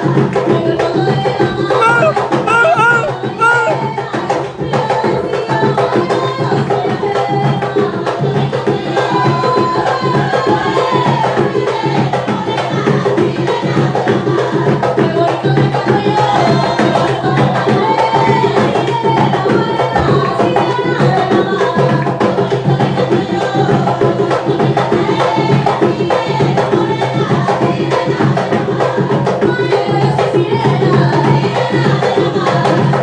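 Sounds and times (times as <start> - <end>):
person singing: 1.7 - 3.9
hand drums beating: 1.8 - 4.0.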